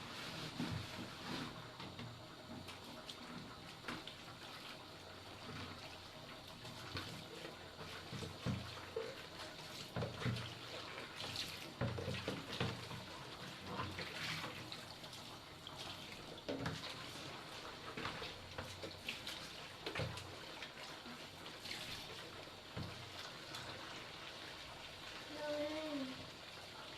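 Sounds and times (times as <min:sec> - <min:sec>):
splashes and knocks of dishes: 0:06.6 - 0:23.8.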